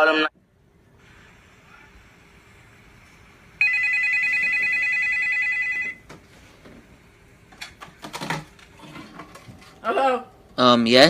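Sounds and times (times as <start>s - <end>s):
telephone ringing: 3.6s - 6.0s.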